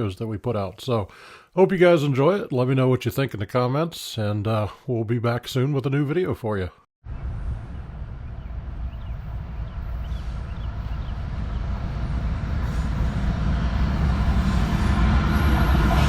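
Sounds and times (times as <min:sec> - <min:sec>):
freight train low rumble: 0:07.1 - 0:16.0.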